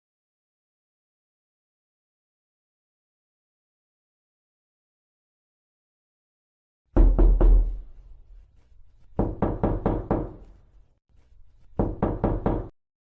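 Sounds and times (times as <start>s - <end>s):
knocking on a door: 7.0s - 7.9s, 9.2s - 10.4s, 11.8s - 12.7s.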